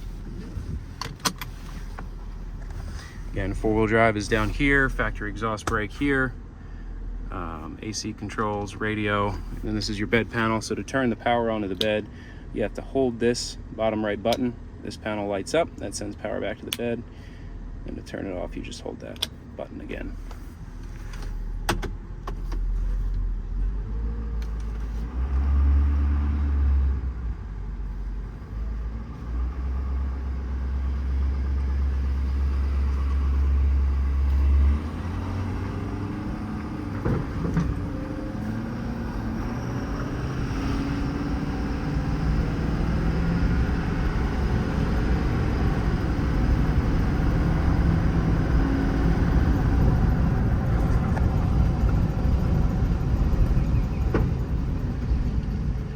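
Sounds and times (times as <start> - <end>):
diesel truck engine accelerating: 0.0 - 55.9.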